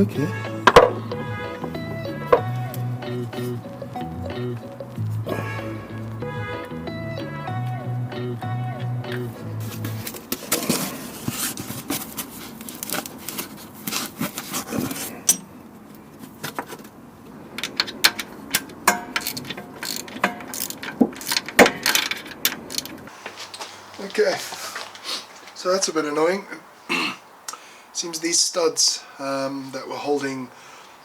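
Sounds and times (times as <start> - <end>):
background music: 0.0 - 10.1.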